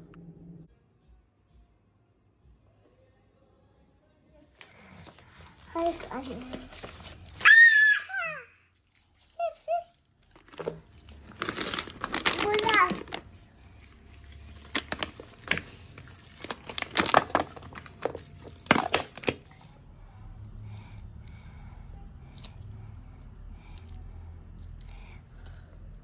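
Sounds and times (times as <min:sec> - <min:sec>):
low steady hum: 0:00.0 - 0:07.4
packaging crinkling and tearing: 0:08.8 - 0:19.7.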